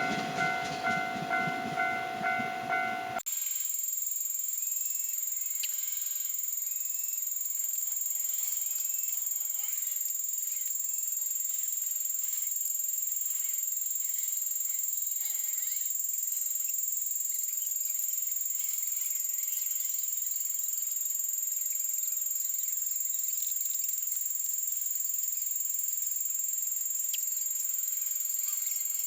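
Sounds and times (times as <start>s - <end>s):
sped-up bell high-pitched whine: 0.0s - 3.2s.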